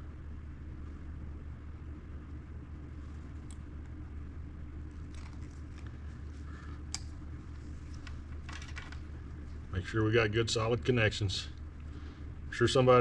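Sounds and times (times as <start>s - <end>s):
steady low hum: 0.0s - 13.0s
clicks of wires being handled: 4.9s - 9.1s.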